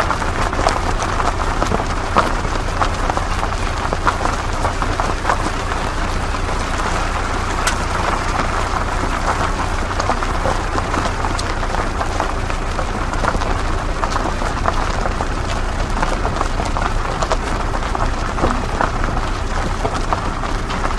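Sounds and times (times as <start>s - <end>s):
low engine rumble: 0.0s - 20.9s
tyre and terrain noise: 0.0s - 20.9s.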